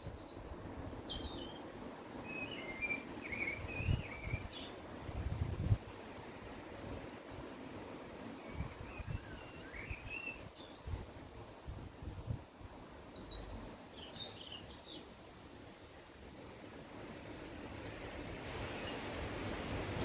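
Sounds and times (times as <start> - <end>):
songbirds singing: 0.0 - 4.9, 8.2 - 16.5, 17.7 - 20.0
outdoor hiss: 0.0 - 20.0
wind rumbling on microphone: 3.2 - 7.5, 8.4 - 13.8.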